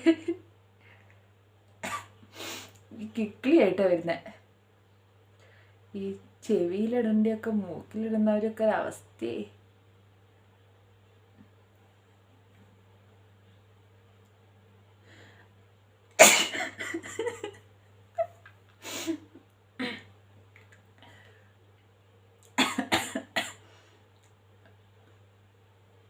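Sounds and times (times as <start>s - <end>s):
woman coughing: 1.8s - 2.1s, 16.2s - 17.2s, 22.6s - 23.6s
woman clearing her throat: 16.2s - 16.8s, 22.6s - 23.6s.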